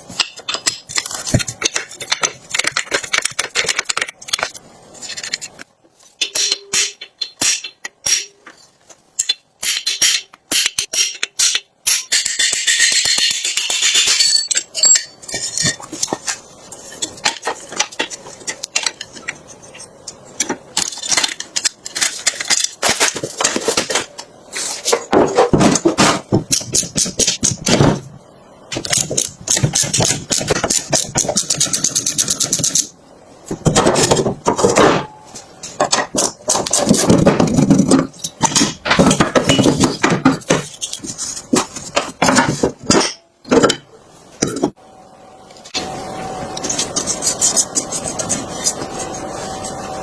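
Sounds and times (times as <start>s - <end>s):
metal tools clanking: 6.2s - 16.3s.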